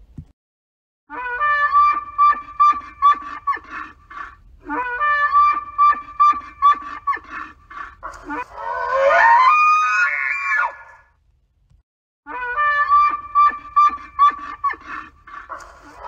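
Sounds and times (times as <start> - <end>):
bull elk bugling: 1.7 - 11.0, 12.8 - 16.0.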